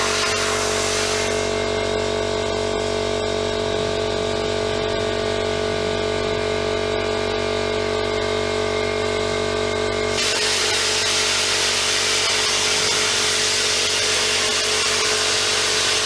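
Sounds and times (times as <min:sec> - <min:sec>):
machine hum with tones: 0:00.0 - 0:16.0.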